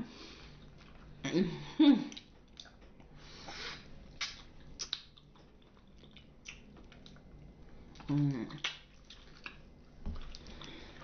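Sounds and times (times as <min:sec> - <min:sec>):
wet mouth clicks and smacks: 0:02.1 - 0:02.9, 0:04.1 - 0:07.2, 0:08.0 - 0:09.6
person chewing soft fruit: 0:02.1 - 0:11.0.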